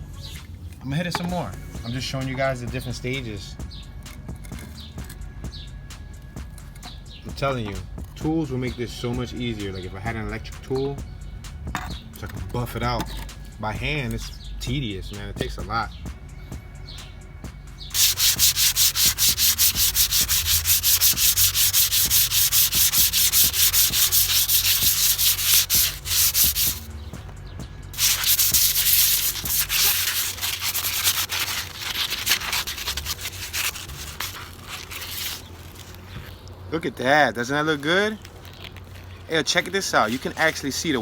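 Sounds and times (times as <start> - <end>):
abrasive scrubbing rusty metal pipe: 17.9 - 27.0, 27.9 - 36.1, 39.2 - 41.0.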